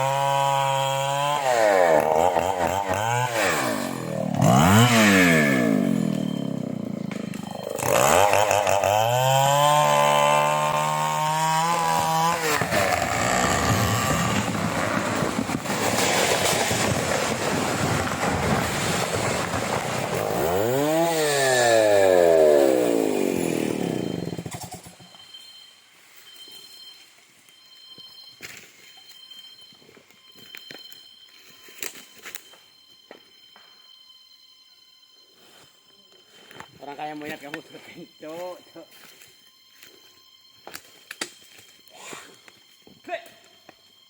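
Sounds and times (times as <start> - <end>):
chainsaw cutting wood: 0.0 - 25.2.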